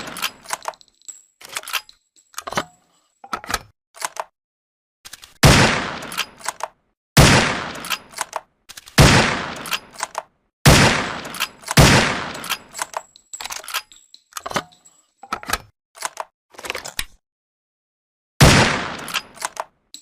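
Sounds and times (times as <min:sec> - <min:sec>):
mechanical clicks and clacks: 0:03.3 - 0:04.3, 0:09.6 - 0:10.3, 0:19.0 - 0:20.0
rifle gunshots: 0:05.4 - 0:06.2, 0:07.2 - 0:07.9, 0:09.0 - 0:09.7, 0:10.7 - 0:12.5, 0:18.4 - 0:19.2.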